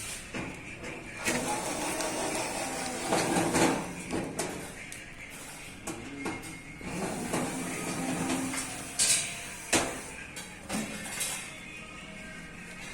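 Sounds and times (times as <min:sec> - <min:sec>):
vacuum sealing machine whirring: 0:01.2 - 0:04.1, 0:06.8 - 0:10.2.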